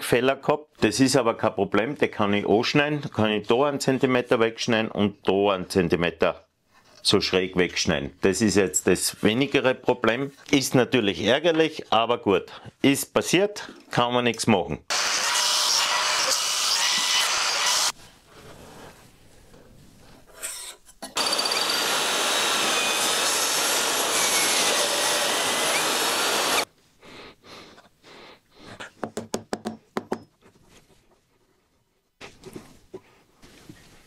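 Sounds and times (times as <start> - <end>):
power tool cutting wood: 14.9 - 17.9, 21.2 - 26.7.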